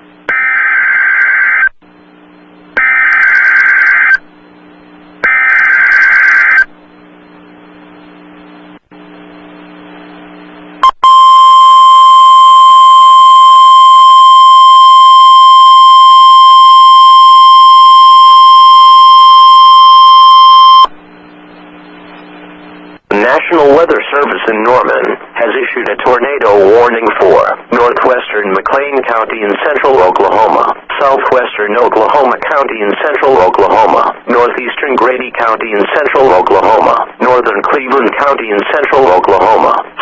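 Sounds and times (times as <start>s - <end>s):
low hum: 6.6s - 23.0s
steady warning alarm tone: 10.8s - 20.9s.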